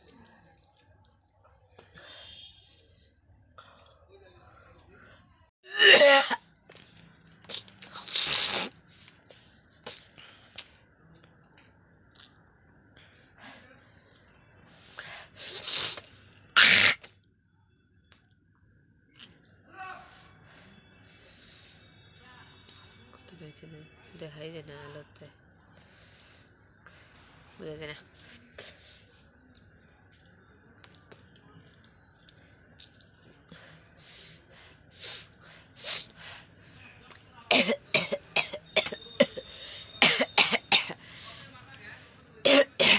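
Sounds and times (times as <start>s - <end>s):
person coughing and clearing throat: 5.7s - 6.4s, 37.5s - 41.0s, 42.4s - 42.9s
person spitting: 7.4s - 8.8s, 15.4s - 17.1s.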